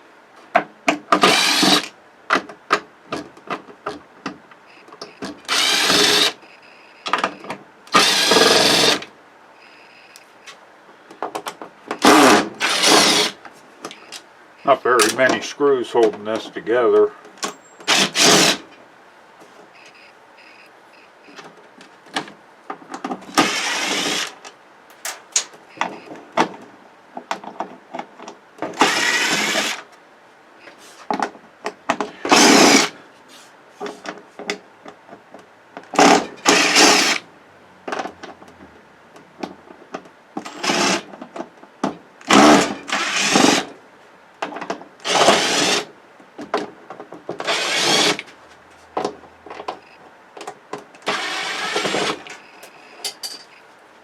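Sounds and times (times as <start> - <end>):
cordless drill backing screws out: 1.2 - 1.9, 12.0 - 13.4.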